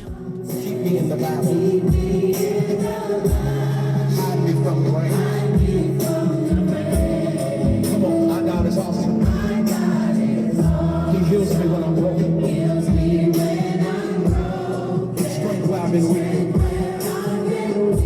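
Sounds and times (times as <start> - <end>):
music with singing: 0.0 - 18.0
kick drum beat: 1.9 - 2.3, 3.3 - 3.6, 5.6 - 7.8, 8.6 - 9.6, 12.9 - 13.3, 14.3 - 14.6, 16.6 - 17.0.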